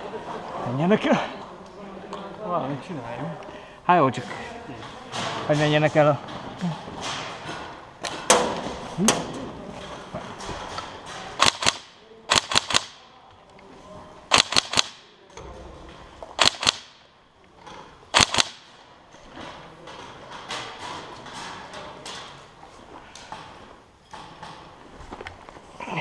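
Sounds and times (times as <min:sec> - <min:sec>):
airsoft gunshots: 0:11.4 - 0:13.0, 0:14.3 - 0:15.0, 0:16.4 - 0:17.0, 0:18.1 - 0:18.7.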